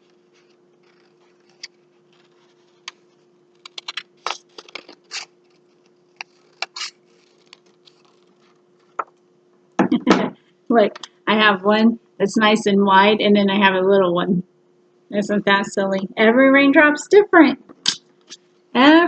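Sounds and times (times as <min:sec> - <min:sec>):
faint steady hum: 0:00.0 - 0:19.0
paper rustling: 0:00.1 - 0:09.0
scissors cutting paper: 0:03.6 - 0:08.5.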